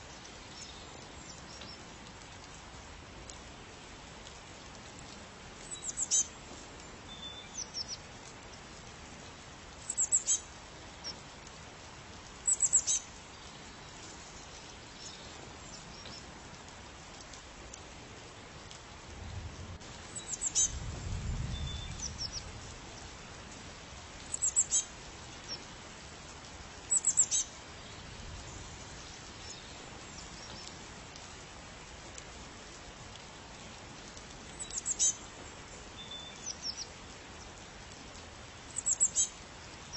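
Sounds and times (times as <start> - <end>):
outdoor hiss: 0.0 - 39.9
small bird high chirps: 5.7 - 6.3, 9.9 - 10.4, 12.5 - 13.0, 20.2 - 20.8, 24.3 - 24.8, 26.9 - 27.5, 34.6 - 35.2, 38.8 - 39.3.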